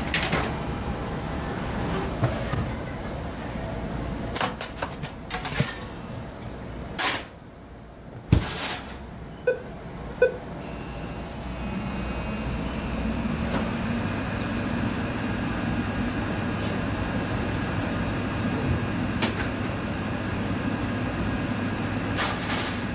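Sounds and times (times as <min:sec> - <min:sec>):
oven fan humming: 0:00.0 - 0:22.9
oven beeps: 0:09.3 - 0:17.4.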